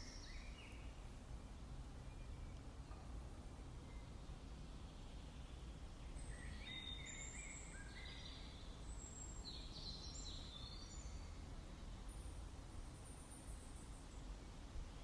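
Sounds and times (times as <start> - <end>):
songbird chirping and trilling: 0.0 - 0.9, 3.8 - 14.2.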